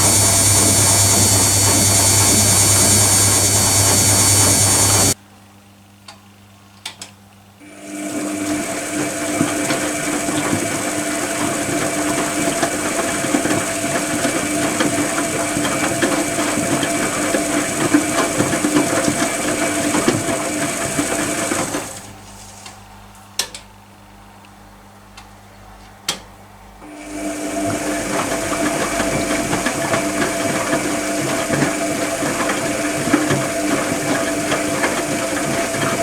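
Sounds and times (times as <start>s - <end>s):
washing machine drum whirring: 0.0s - 5.2s, 7.6s - 22.2s, 26.8s - 36.0s.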